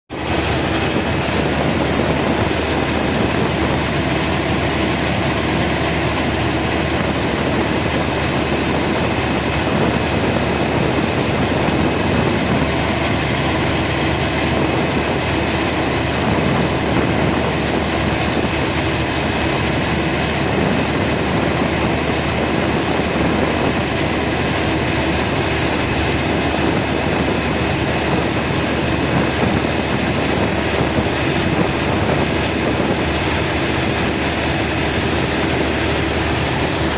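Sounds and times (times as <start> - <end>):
generator engine drone: 0.1 - 36.9.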